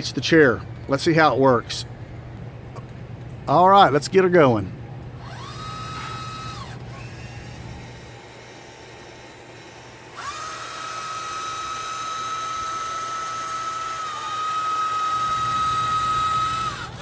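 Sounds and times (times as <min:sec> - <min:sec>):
electric motor whine: 0:05.2 - 0:17.0.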